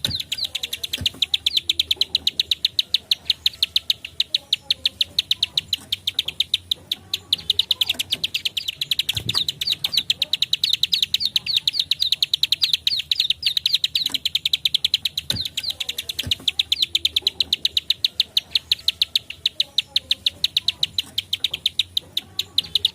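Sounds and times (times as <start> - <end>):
small bird singing sharp notes: 0.0 - 22.9.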